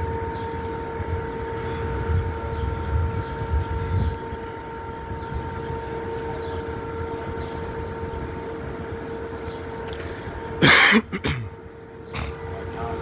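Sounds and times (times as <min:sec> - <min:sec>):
street traffic rumble: 0:00.0 - 0:13.0
loud bursts of noise: 0:03.9 - 0:12.7.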